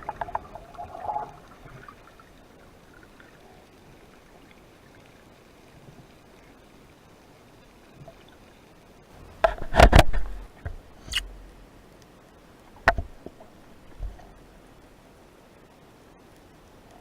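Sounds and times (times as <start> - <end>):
underwater knocks and clicks: 0.0 - 1.8, 9.4 - 10.8, 12.8 - 14.3
faint steady hiss: 0.0 - 17.0.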